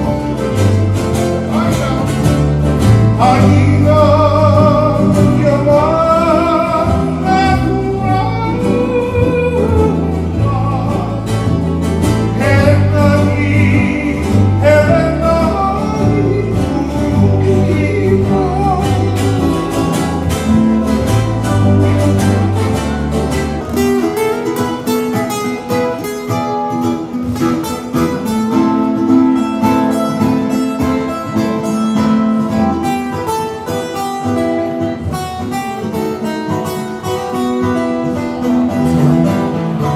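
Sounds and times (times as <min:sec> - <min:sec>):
bass line: 0:00.0 - 0:24.8
plucked guitar: 0:00.0 - 0:39.9
strummed acoustic guitar: 0:00.0 - 0:39.9
person singing: 0:01.2 - 0:22.7.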